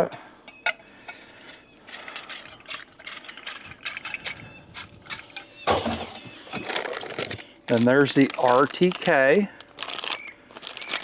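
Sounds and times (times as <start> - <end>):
packaging rustling: 4.8 - 11.0.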